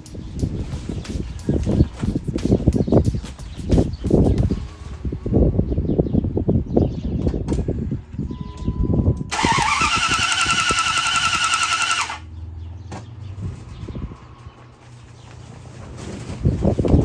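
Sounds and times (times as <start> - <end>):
starter motor cranking engine: 9.3 - 12.2.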